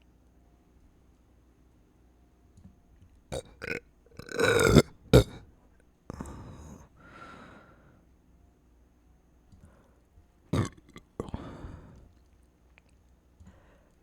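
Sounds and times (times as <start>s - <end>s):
person belching: 3.3s - 5.4s, 10.6s - 11.6s
breathy sounds: 6.1s - 7.9s, 10.6s - 12.2s.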